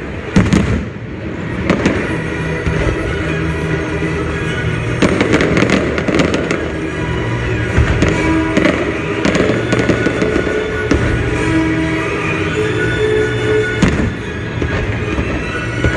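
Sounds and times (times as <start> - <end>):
background music: 0.0 - 15.9
fireworks cracking and popping: 4.8 - 12.1.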